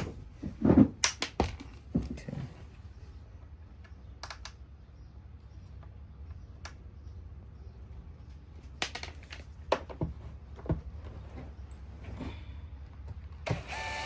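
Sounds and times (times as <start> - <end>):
plastic parts clicking and knocking: 0.6 - 2.1, 4.2 - 4.6, 8.7 - 10.1.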